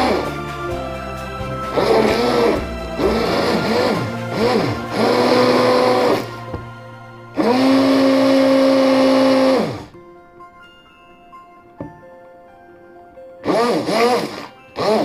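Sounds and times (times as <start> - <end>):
kitchen blender running: 1.8 - 6.3, 7.4 - 9.9, 13.5 - 15.0.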